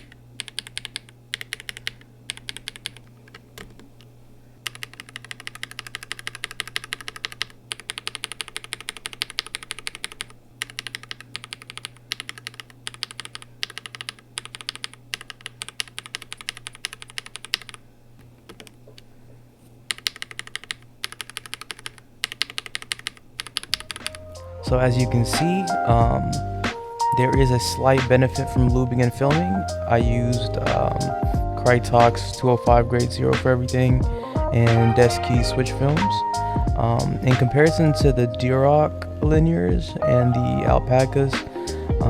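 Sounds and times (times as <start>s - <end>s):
fast typing on mechanical keyboard: 0.0s - 3.9s, 4.6s - 17.8s, 18.5s - 18.8s, 19.9s - 24.2s
steady low hum: 0.0s - 42.0s.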